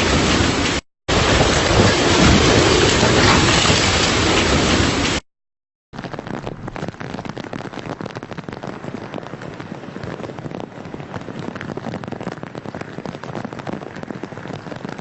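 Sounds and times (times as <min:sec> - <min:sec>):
rain pattering: 0:06.0 - 0:15.0.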